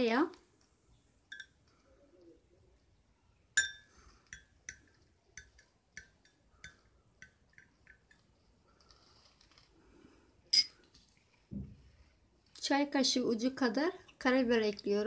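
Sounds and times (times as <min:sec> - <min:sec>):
teaspoon clinking against cup: 0:01.3 - 0:01.6, 0:03.6 - 0:08.2, 0:10.6 - 0:10.8.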